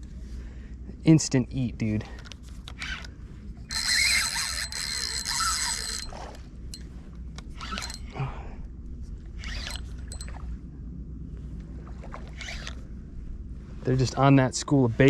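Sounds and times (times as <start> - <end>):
handling clicks and rustles: 1.8 - 8.2
fishing reel drag buzzing: 2.6 - 8.1, 9.3 - 10.4, 12.3 - 12.9.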